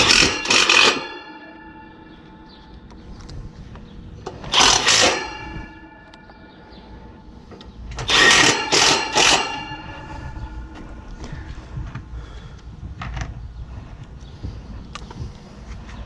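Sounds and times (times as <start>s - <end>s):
cordless drill driving screws: 4.5s - 5.4s, 8.0s - 9.6s.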